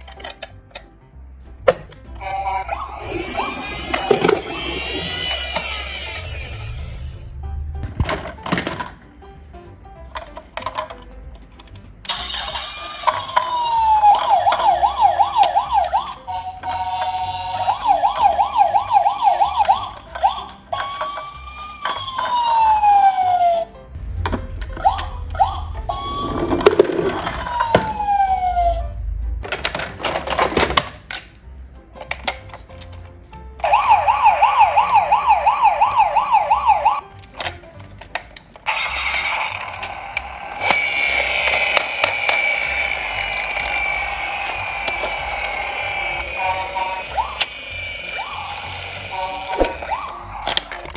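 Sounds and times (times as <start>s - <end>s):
toy siren wailing: 2.2s - 7.3s, 12.1s - 23.9s, 24.7s - 29.0s, 33.6s - 37.1s, 38.7s - 50.9s
low rumble: 5.3s - 9.0s, 24.0s - 29.5s.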